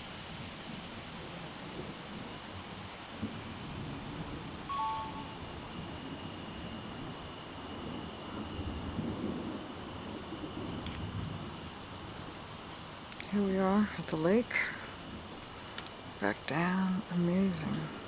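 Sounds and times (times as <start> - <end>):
crickets trilling: 0.1 - 18.0
two-note chirp: 4.7 - 5.6.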